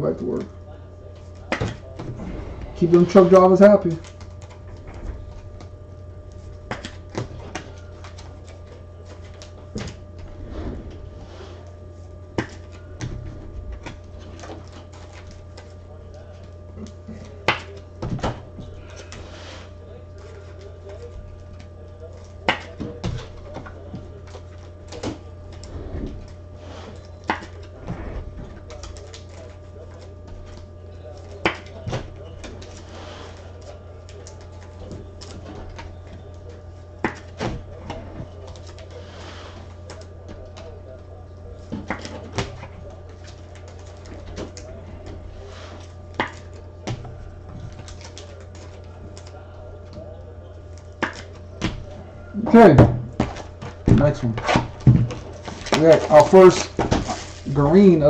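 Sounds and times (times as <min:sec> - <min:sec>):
steady low hum: 0:00.0 - 0:58.0
cards rustling: 0:41.6 - 0:58.0.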